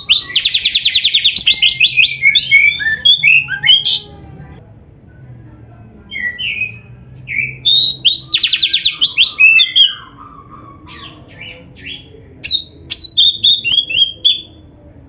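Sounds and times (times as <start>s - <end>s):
songbird singing varied song: 0.0s - 4.5s, 6.1s - 14.6s.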